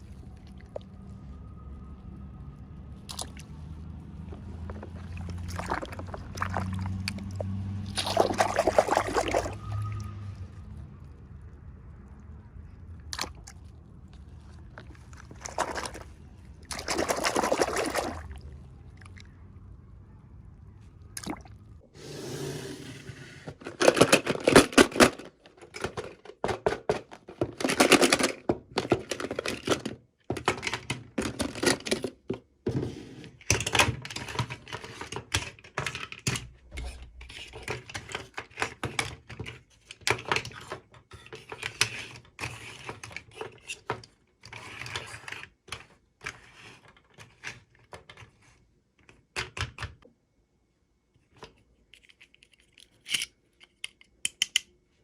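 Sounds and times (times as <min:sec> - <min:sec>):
plastic toy pieces clicking: 0:51.9 - 0:54.7.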